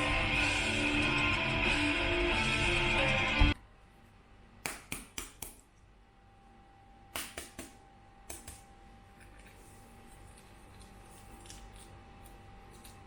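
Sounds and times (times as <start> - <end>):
faint high hum: 5.5 - 13.0.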